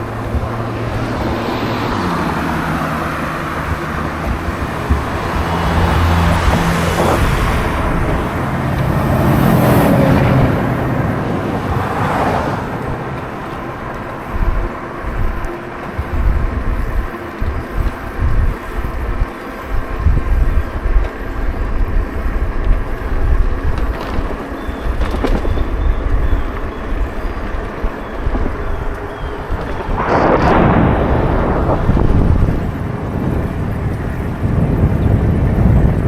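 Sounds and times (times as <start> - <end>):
vehicle passing: 0.0 - 17.9, 25.9 - 34.5
steady road noise: 0.0 - 36.0
wind buffeting microphone: 0.0 - 36.0.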